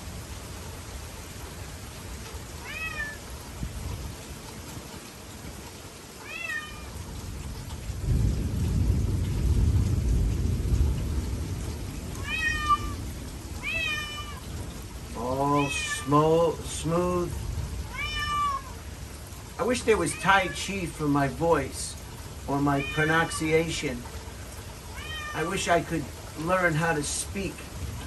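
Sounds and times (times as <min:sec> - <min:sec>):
steady rain: 0:00.0 - 0:28.0
cat meowing: 0:02.6 - 0:03.3, 0:06.2 - 0:07.0, 0:12.2 - 0:13.0, 0:13.6 - 0:14.5, 0:15.6 - 0:16.2, 0:17.9 - 0:18.8, 0:20.0 - 0:20.6, 0:22.7 - 0:23.4, 0:24.9 - 0:25.5
thunder rumbling: 0:07.1 - 0:28.0.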